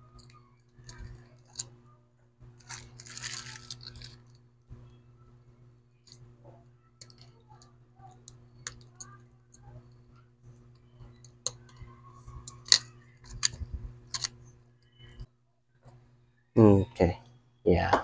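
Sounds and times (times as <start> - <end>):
steady low hum: 0.0 - 18.0
tools and phone parts clicking: 0.2 - 1.7, 7.0 - 10.0, 10.7 - 11.8, 12.4 - 14.4.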